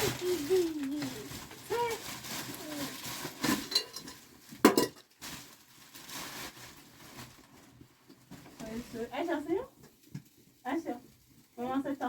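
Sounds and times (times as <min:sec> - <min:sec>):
kitchenware clinking and knocking: 0:03.4 - 0:05.1.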